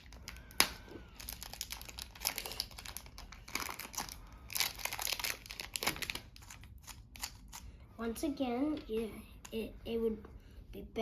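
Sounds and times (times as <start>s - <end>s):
plastic packaging crinkling: 0.0s - 7.6s.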